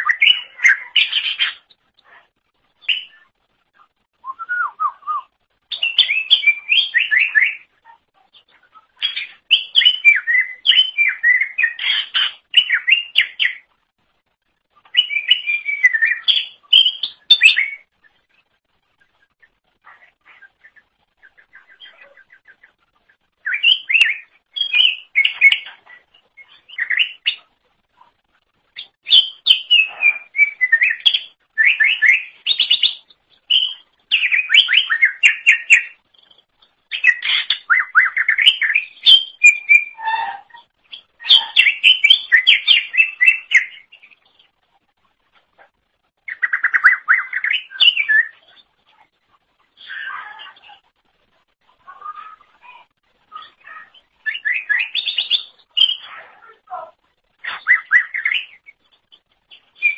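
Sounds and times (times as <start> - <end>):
bird singing chirps and trills: 0.0 - 13.9, 14.8 - 27.6, 28.7 - 44.6, 46.2 - 49.1, 51.8 - 59.9.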